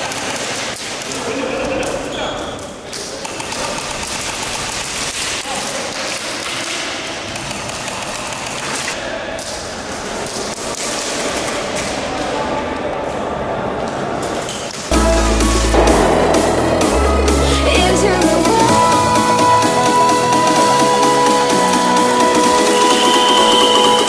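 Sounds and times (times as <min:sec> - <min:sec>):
voices: 0:09.0 - 0:24.0.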